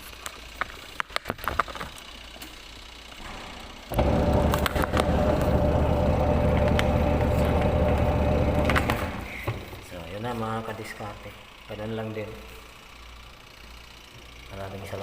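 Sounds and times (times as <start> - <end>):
washing machine motor humming: 3.8 - 9.7.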